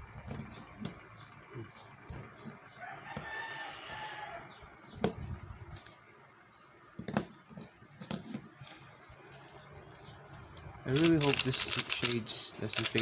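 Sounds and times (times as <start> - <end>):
rooster crowing: 2.7 - 4.6
sharp clicks: 9.3 - 13.0.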